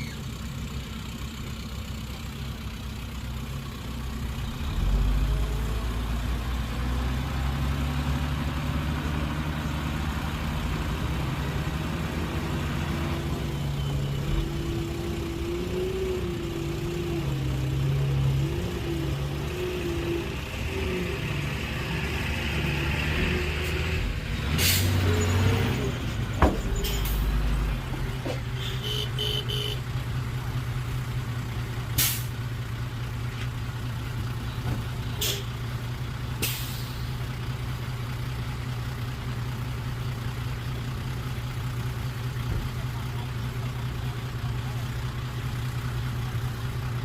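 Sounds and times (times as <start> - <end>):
heavy diesel engine idling: 0.0 - 7.2, 26.0 - 47.0
short sharp hisses: 24.6 - 25.0, 32.0 - 32.3, 36.4 - 37.1.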